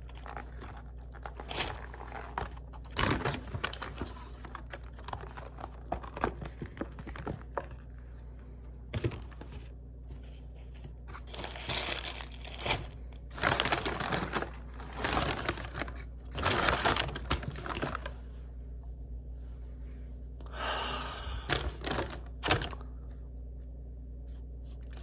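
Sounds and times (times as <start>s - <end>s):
paper packaging crinkling: 0.0s - 8.1s, 9.0s - 18.4s, 21.5s - 22.8s.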